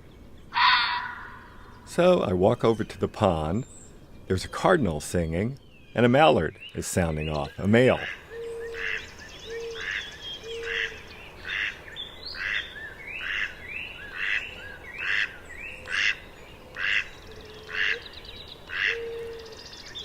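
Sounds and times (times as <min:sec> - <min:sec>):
faint bird singing: 0:00.0 - 0:20.0
duck calling: 0:00.6 - 0:01.4, 0:07.8 - 0:11.8, 0:12.4 - 0:16.2, 0:16.8 - 0:17.1, 0:17.7 - 0:18.0, 0:18.7 - 0:19.2.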